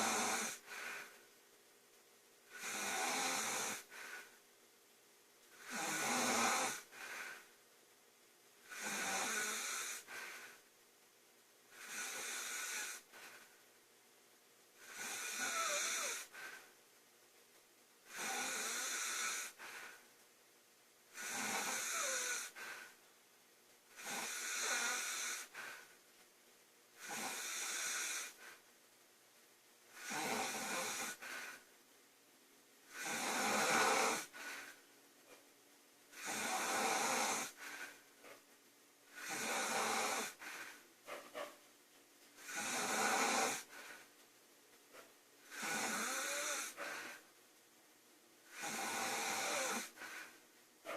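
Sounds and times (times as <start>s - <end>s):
woman snoring: 0.0s - 1.2s, 2.5s - 4.3s, 5.5s - 7.5s, 8.6s - 10.6s, 11.7s - 13.5s, 14.8s - 16.6s, 18.1s - 20.0s, 21.1s - 22.9s, 23.9s - 25.9s, 27.0s - 28.6s, 29.9s - 31.6s, 32.9s - 34.8s, 36.1s - 38.0s, 39.1s - 40.8s, 42.4s - 44.0s, 45.4s - 47.2s, 48.4s - 50.3s.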